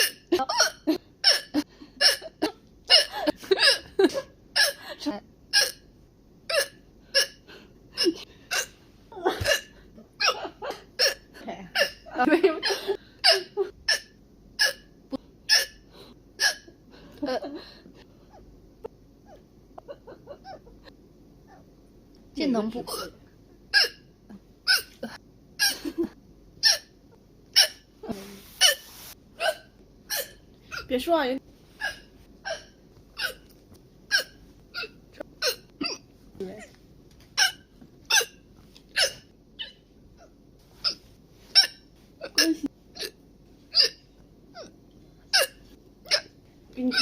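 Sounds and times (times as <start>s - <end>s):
woman hiccuping: 0.0s - 3.9s, 5.5s - 5.9s, 6.5s - 7.4s, 34.1s - 36.1s, 37.4s - 39.8s, 41.6s - 44.7s, 45.3s - 46.3s.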